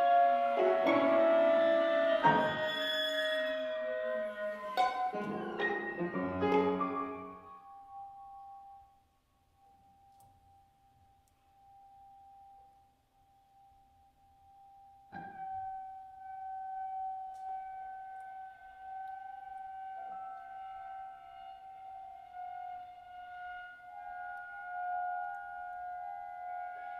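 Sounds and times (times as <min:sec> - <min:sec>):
loud piano chord: 0:00.0 - 0:02.8, 0:04.0 - 0:08.0
chamber music quintet: 0:00.0 - 0:07.6.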